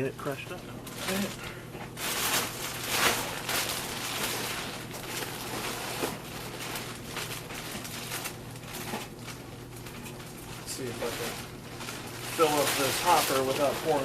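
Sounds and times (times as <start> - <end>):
grains rustling: 10.5 - 14.0.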